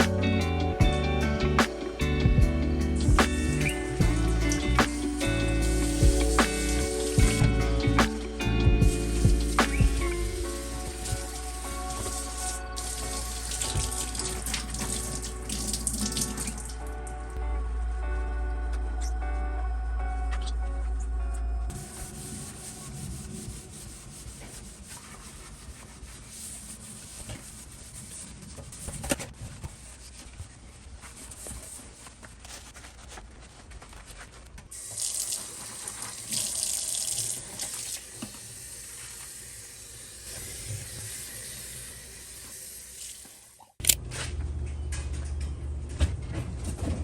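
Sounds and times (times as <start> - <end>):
water running from a tap: 5.6 - 7.5, 10.5 - 16.8, 34.8 - 43.7.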